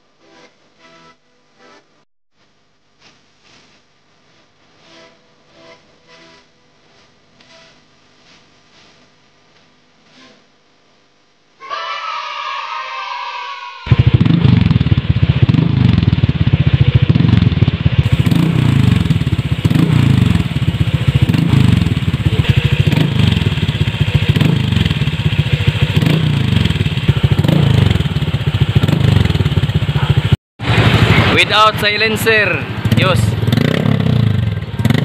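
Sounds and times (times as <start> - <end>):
scooter engine revving: 13.9 - 35.0.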